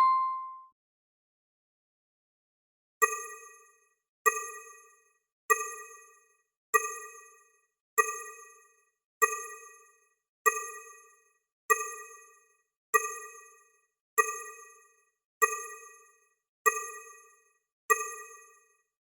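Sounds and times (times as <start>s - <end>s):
bell ringing: 0.0s - 0.6s.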